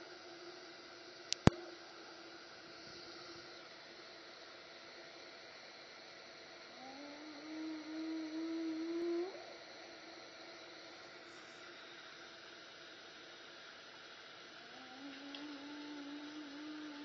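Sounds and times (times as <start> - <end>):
steady hiss: 0.0 - 17.0
hyena whooping: 6.7 - 10.7, 14.5 - 17.0.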